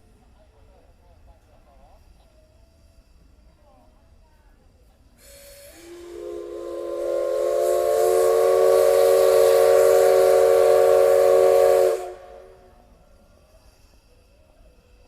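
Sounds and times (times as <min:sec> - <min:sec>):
steam hissing: 0:01.4 - 0:15.0
steam locomotive whistle: 0:05.2 - 0:12.9.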